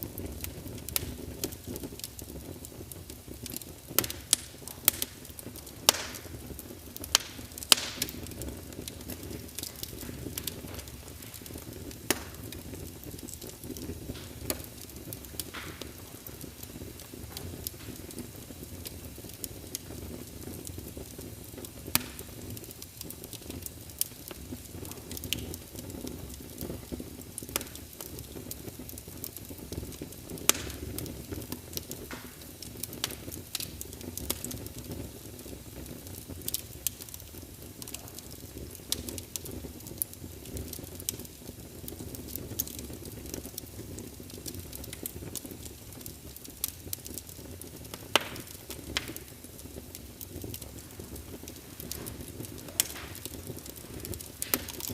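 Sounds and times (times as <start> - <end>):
wood fire crackling: 0.0 - 54.9.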